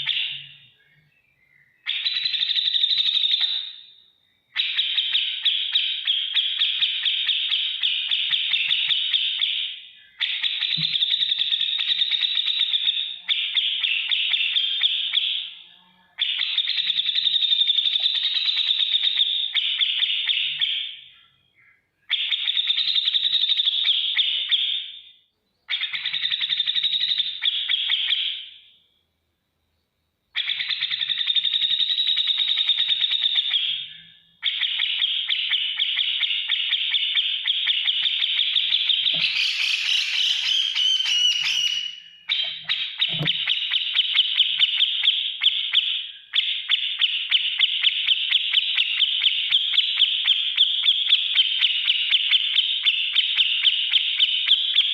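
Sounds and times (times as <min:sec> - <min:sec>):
bird chattering calls: 0:38.6 - 0:44.7.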